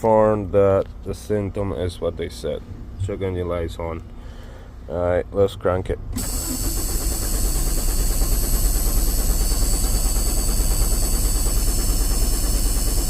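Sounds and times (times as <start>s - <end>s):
diesel engine cranking: 2.8s - 13.0s.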